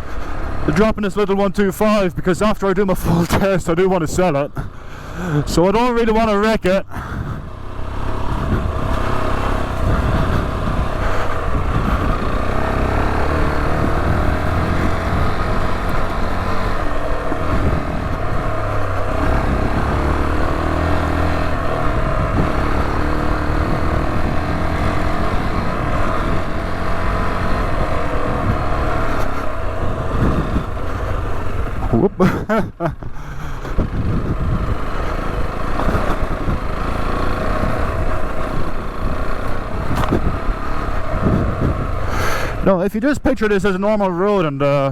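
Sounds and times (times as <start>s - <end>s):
motorcycle engine running: 0.0s - 42.7s
low rumble on microphone: 7.0s - 20.5s, 41.2s - 42.2s.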